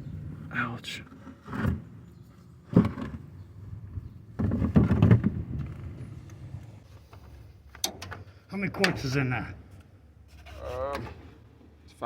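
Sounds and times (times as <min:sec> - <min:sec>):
tools clunking and rattling: 0:01.2 - 0:06.2, 0:07.0 - 0:09.1.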